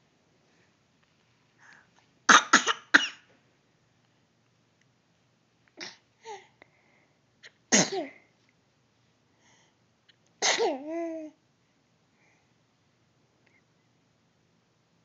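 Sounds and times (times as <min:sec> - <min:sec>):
baby sneezing: 0:10.4 - 0:10.8.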